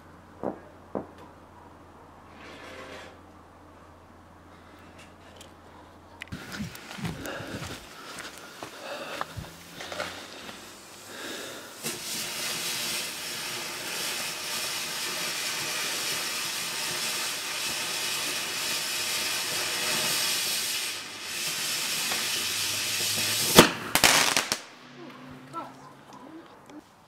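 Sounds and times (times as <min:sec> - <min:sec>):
faint crackles: 0:04.6 - 0:13.0
firework fountain hissing: 0:06.3 - 0:25.0.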